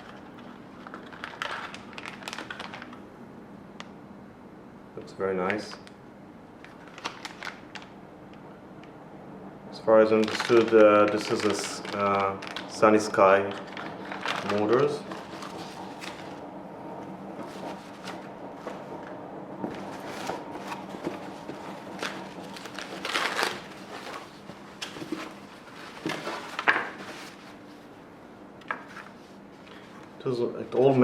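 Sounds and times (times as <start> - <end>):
packaging rustling: 0.0 - 3.0, 6.6 - 8.0, 9.9 - 28.0
faint steady hum: 0.0 - 31.0.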